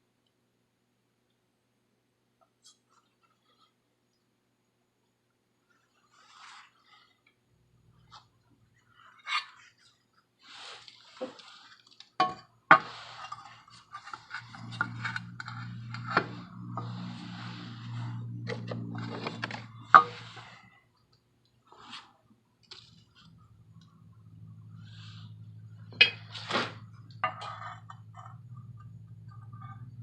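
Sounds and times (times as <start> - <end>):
steady low hum: 13.2 - 21.0.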